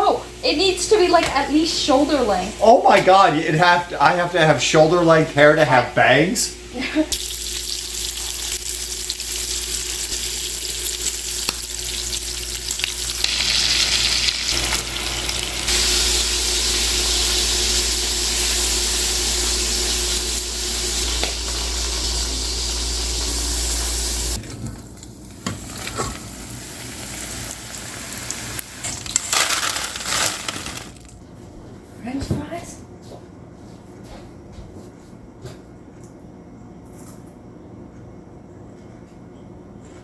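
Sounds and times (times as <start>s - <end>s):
potatoes sizzling in hot oil: 6.6s - 24.4s, 25.1s - 31.0s.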